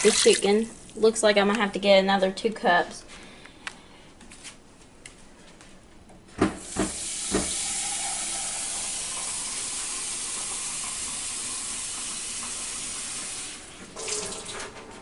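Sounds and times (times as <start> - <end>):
tap water running into cup: 0.0 - 0.9, 6.7 - 14.5.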